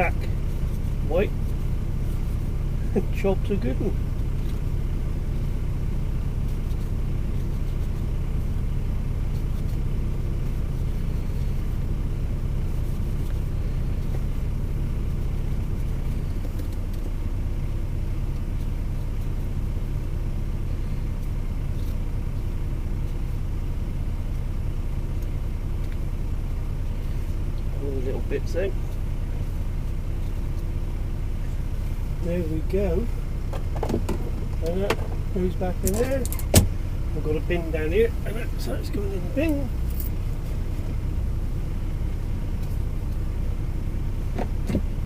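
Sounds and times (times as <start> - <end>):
diesel engine idling: 0.0 - 45.0.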